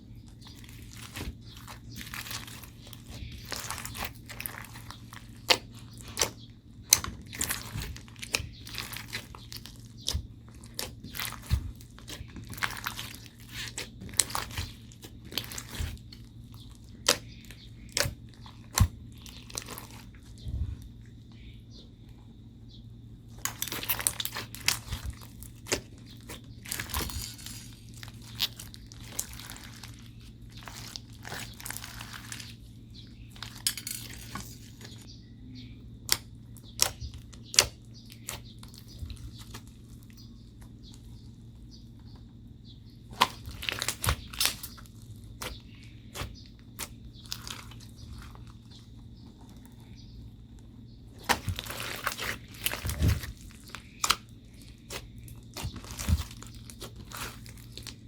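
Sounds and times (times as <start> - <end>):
steady low hum: 0.0 - 58.0
slime squished by hand: 0.4 - 20.6, 23.4 - 32.6, 43.1 - 48.8, 51.2 - 58.0.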